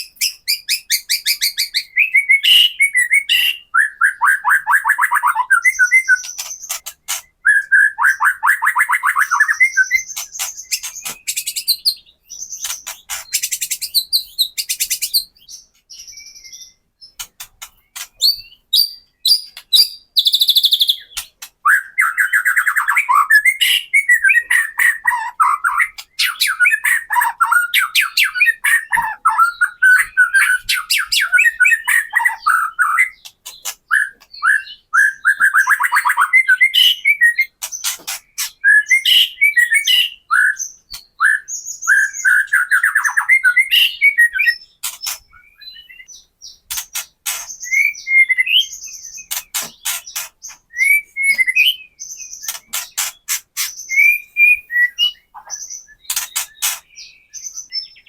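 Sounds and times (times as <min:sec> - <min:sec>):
songbird singing trills and whistles: 0:00.0 - 0:58.0.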